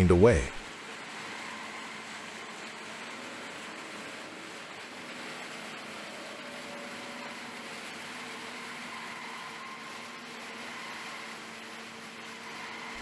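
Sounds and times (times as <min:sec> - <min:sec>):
faint hum: 0:00.0 - 0:00.6.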